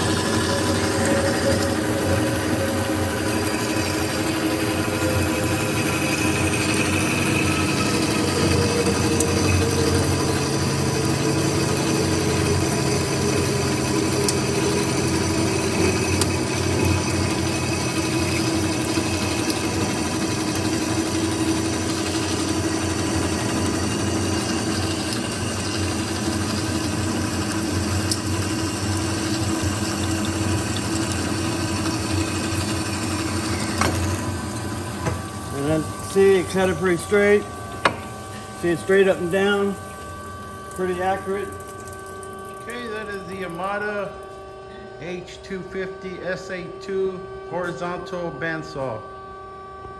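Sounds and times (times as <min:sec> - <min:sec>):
band saw cutting metal: 0:00.0 - 0:25.4, 0:31.0 - 0:41.7.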